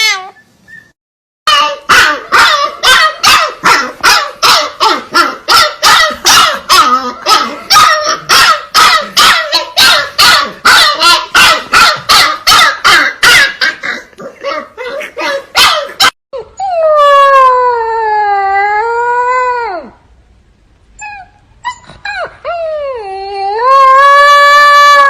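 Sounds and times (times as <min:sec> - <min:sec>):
puppy barking: 0:01.5 - 0:16.2.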